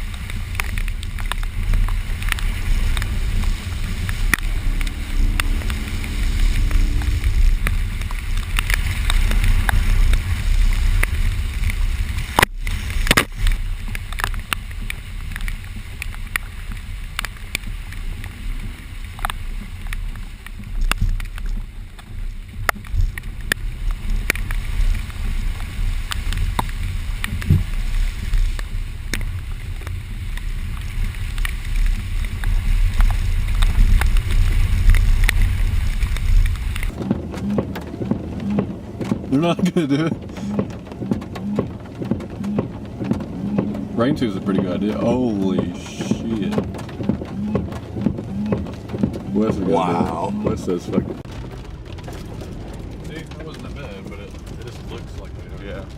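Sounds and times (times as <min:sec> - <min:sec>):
car driving on rough trail: 0:00.0 - 0:55.9
knocks and rattles: 0:30.8 - 0:55.9.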